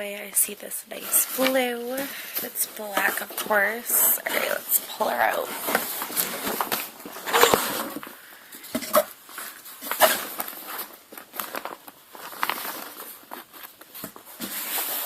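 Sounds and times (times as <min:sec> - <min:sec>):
packaging rustling and crinkling: 0:00.2 - 0:15.0.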